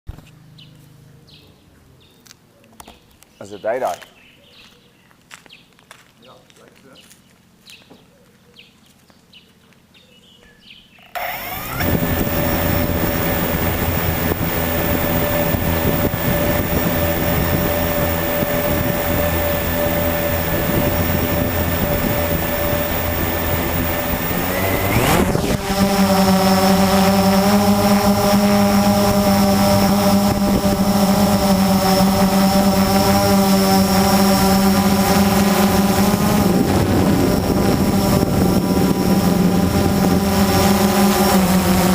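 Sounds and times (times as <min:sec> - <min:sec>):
quadcopter motors whining: 0:11.1 - 0:41.9.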